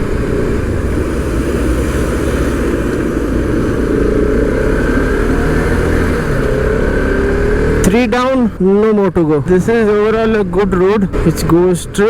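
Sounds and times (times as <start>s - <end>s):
motorcycle engine running: 0.0s - 8.6s
wind rush: 0.0s - 8.6s
road rumble: 0.0s - 12.0s.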